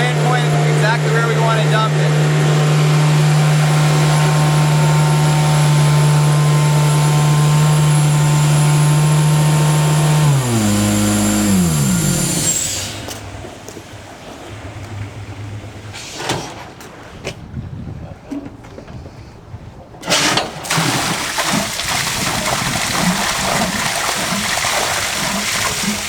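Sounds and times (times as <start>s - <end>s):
vacuum blower high whine: 0.0s - 13.4s
diesel engine low hum: 0.0s - 20.0s.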